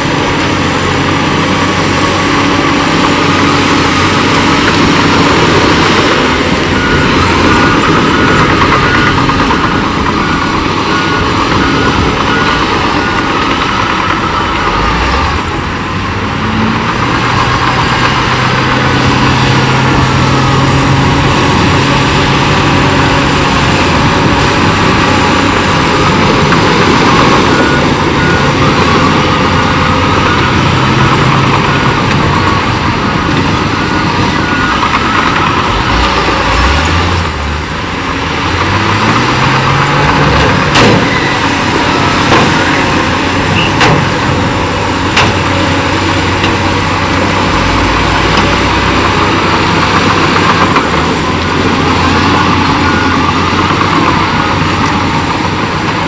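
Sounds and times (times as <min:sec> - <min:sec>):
heavy diesel machinery running: 0:00.0 - 0:56.0.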